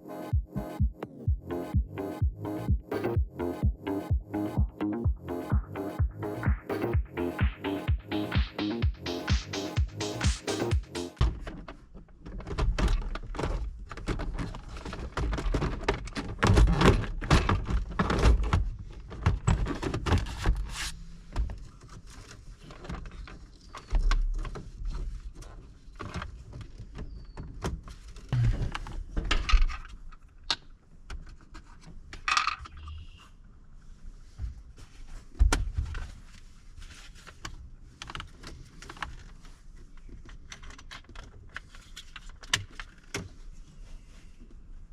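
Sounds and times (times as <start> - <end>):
deep thumps: 0.3 - 11.4.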